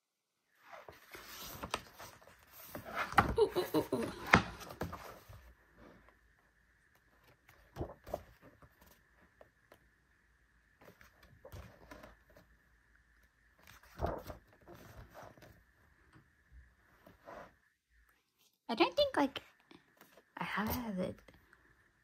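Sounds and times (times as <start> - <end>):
photobook pages turning: 0.6 - 3.4, 6.9 - 9.8, 10.8 - 12.6, 13.5 - 15.7.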